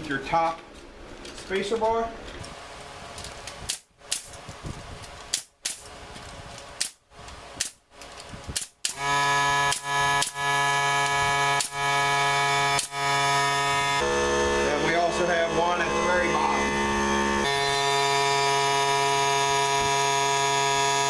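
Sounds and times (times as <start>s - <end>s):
several held tones: 9.0s - 21.0s.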